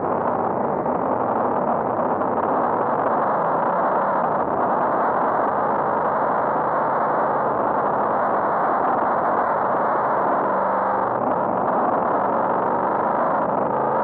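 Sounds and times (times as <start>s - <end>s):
rushing road noise: 0.0s - 14.0s.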